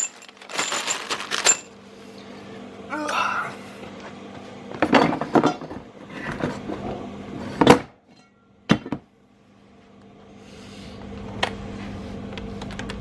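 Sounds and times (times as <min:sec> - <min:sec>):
tools clanking on engine parts: 0:00.0 - 0:01.7.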